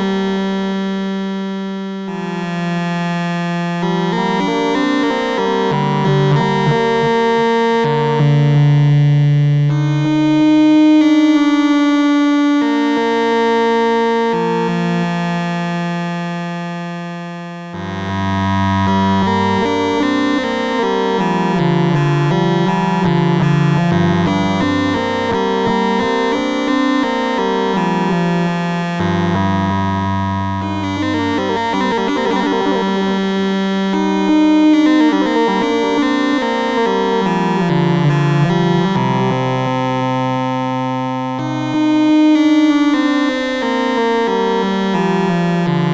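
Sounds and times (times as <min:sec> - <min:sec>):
analog synthesizer sustained notes: 0:17.8 - 0:45.9.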